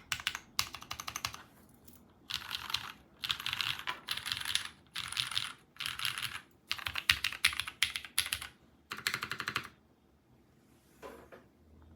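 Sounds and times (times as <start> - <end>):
mechanical keyboard typing: 0.0 - 1.4, 2.3 - 9.8.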